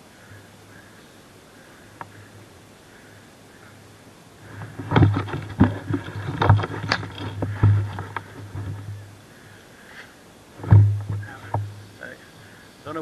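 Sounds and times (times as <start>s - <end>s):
sharp knocks and clicks: 4.5s - 9.1s, 10.6s - 11.8s.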